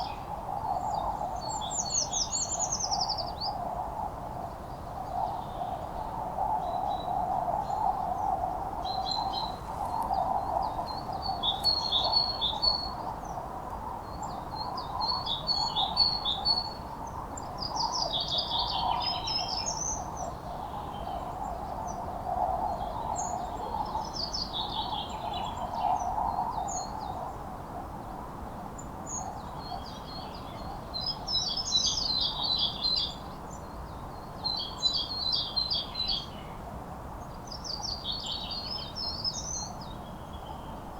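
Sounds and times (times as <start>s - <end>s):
songbirds trilling: 8.8s - 13.4s.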